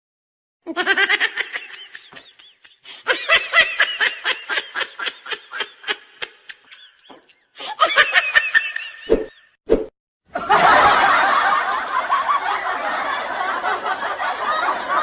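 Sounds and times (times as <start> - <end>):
person laughing hard: 0.7 - 9.1.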